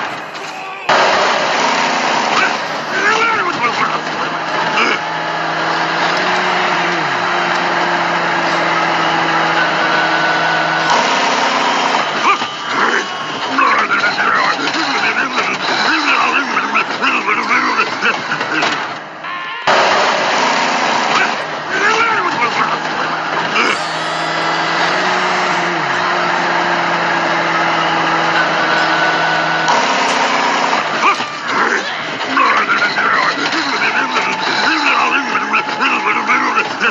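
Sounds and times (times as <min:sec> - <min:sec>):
tone gliding down in pitch: 0:00.0 - 0:12.3, 0:23.6 - 0:31.6
vehicle engine running: 0:00.0 - 0:36.4.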